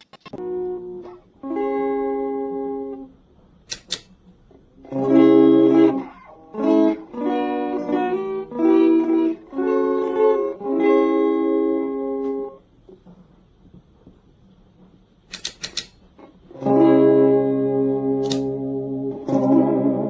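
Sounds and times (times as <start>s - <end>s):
electric guitar strumming chords: 0.4s - 3.6s, 4.4s - 12.7s, 16.2s - 20.0s
sharp click: 3.7s - 4.2s, 15.3s - 16.0s, 18.2s - 18.6s.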